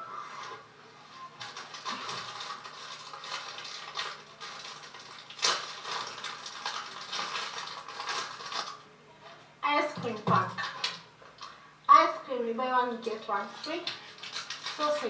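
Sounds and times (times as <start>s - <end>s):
packaging rustling and crinkling: 1.4s - 8.8s, 13.5s - 15.0s.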